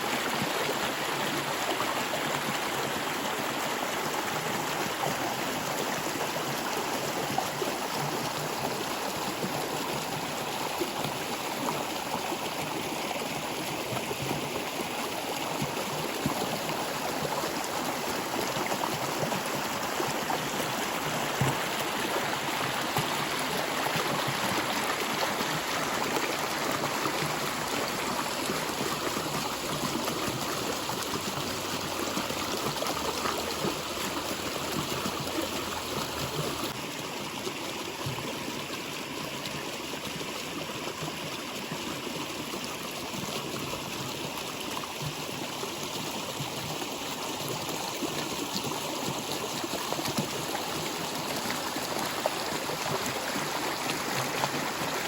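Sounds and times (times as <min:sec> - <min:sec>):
stream water flowing: 0:00.0 - 0:55.0.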